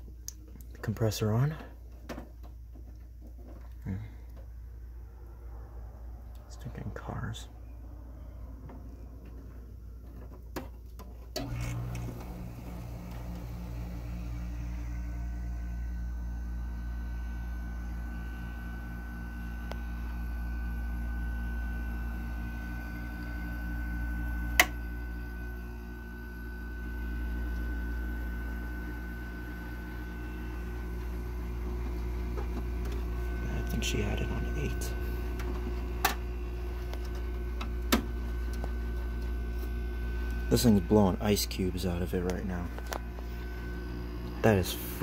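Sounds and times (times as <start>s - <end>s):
air conditioner compressor humming: 0.0s - 45.0s
faint whine: 0.0s - 45.0s.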